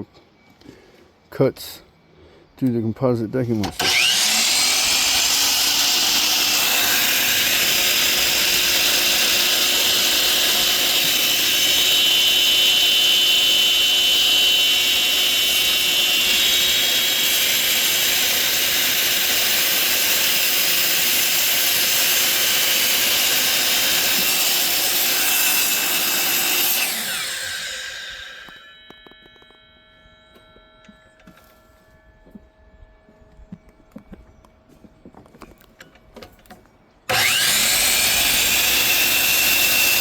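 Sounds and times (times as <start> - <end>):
miter saw cutting: 3.6 - 28.8, 37.1 - 40.0.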